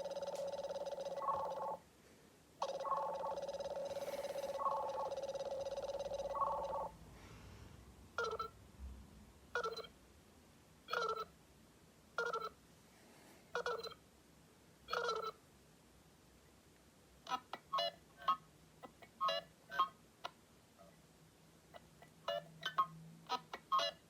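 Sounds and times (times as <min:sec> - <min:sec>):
buzzy ringtone: 0:00.0 - 0:01.8, 0:02.6 - 0:07.0, 0:08.2 - 0:08.6, 0:09.6 - 0:09.9, 0:10.9 - 0:11.3, 0:12.2 - 0:12.6, 0:13.6 - 0:14.0, 0:14.9 - 0:15.4
chirping ringtone: 0:00.0 - 0:01.8, 0:02.6 - 0:07.0, 0:08.2 - 0:08.6, 0:09.6 - 0:09.9, 0:10.9 - 0:11.4, 0:12.2 - 0:12.6, 0:13.6 - 0:14.0, 0:14.9 - 0:15.4, 0:17.7 - 0:20.0, 0:22.2 - 0:24.0.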